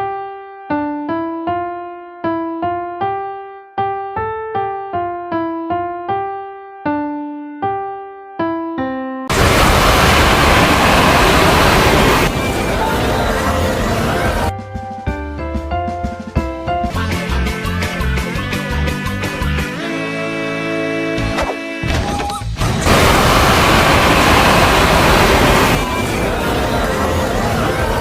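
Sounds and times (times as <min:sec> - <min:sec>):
piano-like keyboard melody: 0:00.0 - 0:09.3, 0:12.5 - 0:17.1
children cheering: 0:09.3 - 0:14.5, 0:22.8 - 0:28.0.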